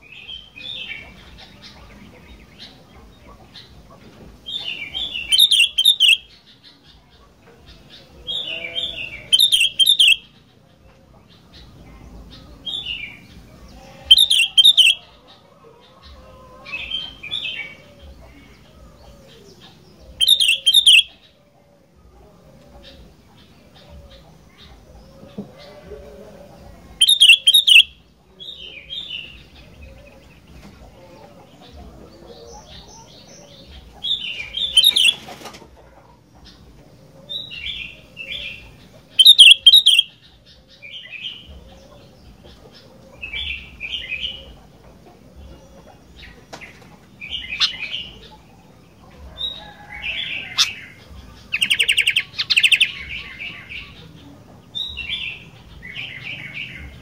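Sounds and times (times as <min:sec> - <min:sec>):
bulbul singing: 0:00.0 - 0:35.4, 0:36.4 - 0:57.0.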